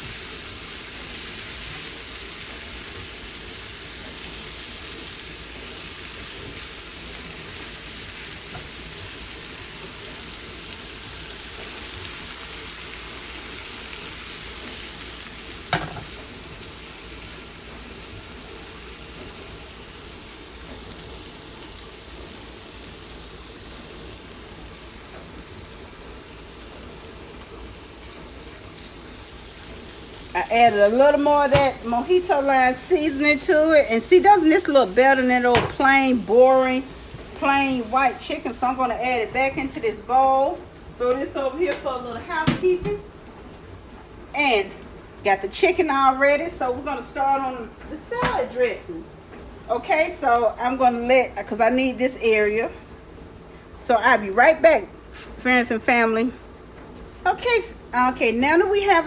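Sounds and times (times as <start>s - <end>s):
chicken sizzling in a pan: 0.0s - 40.5s.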